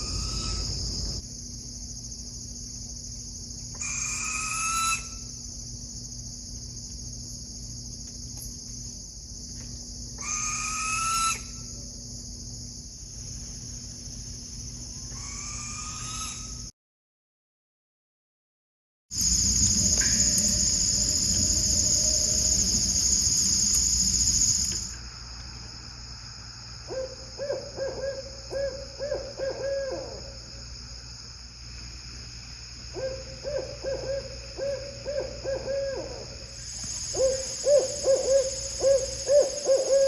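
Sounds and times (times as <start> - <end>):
owl hooting: 0.0 - 0.7, 3.8 - 5.3, 10.2 - 11.7, 15.1 - 16.6, 26.9 - 30.4, 32.9 - 36.5, 37.1 - 40.0
steady hiss and hum: 0.0 - 15.9, 19.2 - 27.5, 30.2 - 39.9
high insect-like shrill: 3.8 - 5.4, 10.2 - 11.8, 19.2 - 24.9.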